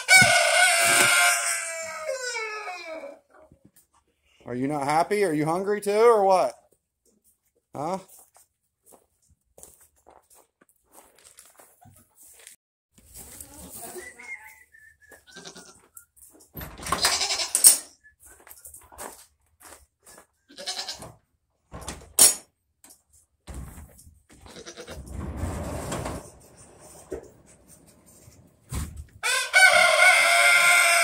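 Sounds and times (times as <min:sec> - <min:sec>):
goats bleating: 0:20.5 - 0:21.0, 0:24.4 - 0:25.0.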